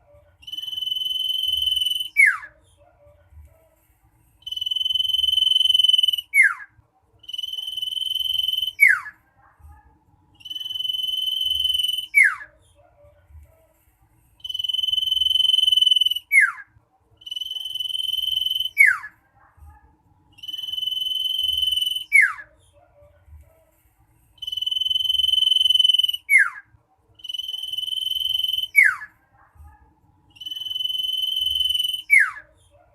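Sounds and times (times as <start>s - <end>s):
bird calling high whistle: 0.4s - 2.4s, 4.4s - 6.6s, 7.2s - 9.1s, 10.4s - 12.4s, 14.4s - 16.6s, 17.2s - 19.1s, 24.4s - 26.6s, 27.2s - 29.0s, 30.4s - 32.4s.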